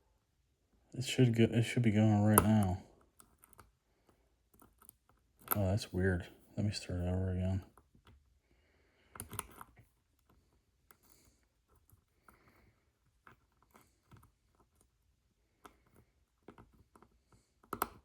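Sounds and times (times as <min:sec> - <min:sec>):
lock picks clicking and scraping: 0:02.2 - 0:03.8, 0:04.4 - 0:05.9, 0:09.1 - 0:18.0.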